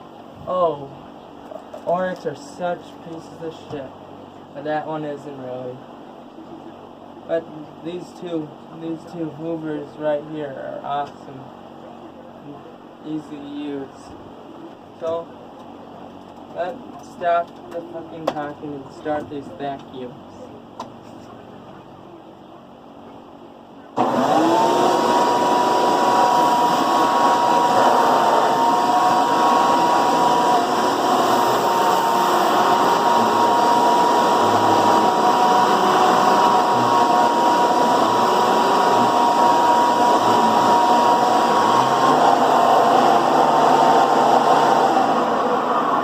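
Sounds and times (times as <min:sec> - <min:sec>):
vacuum cleaner motor whining: 0:24.0 - 0:46.0.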